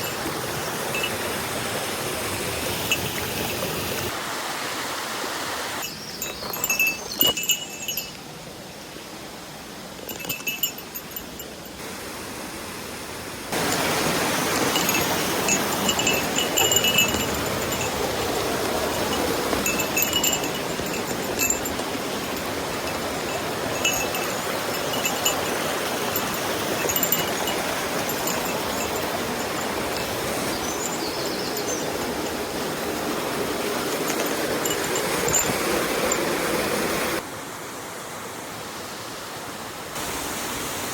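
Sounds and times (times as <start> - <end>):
high metallic jingling: 0.0 - 1.5, 2.7 - 4.1, 5.8 - 8.4, 10.0 - 11.8, 13.6 - 36.6
flowing water rushing: 0.0 - 40.9.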